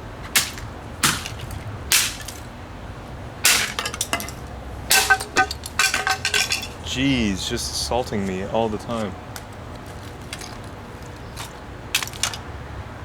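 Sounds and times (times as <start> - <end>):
plastic clock radio being smashed: 0.3 - 2.5, 3.5 - 6.8
plastic pieces clattering: 0.3 - 2.5, 3.5 - 6.9, 9.8 - 12.4.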